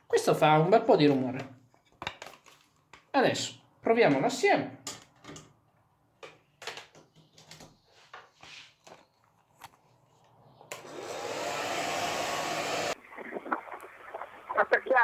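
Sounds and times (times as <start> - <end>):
hair dryer blowing: 10.7 - 13.0.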